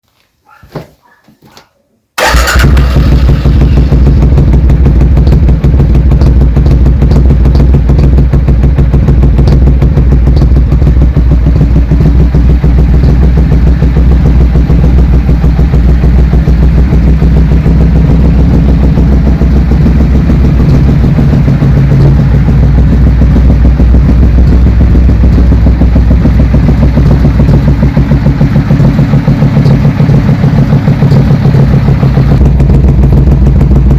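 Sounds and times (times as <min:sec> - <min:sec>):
motorcycle engine starting and idling: 0:02.2 - 0:33.9.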